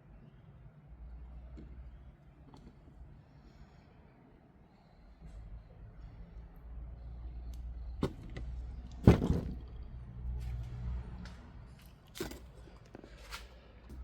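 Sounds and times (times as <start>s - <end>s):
objects knocking and clattering: 8.0s - 9.8s.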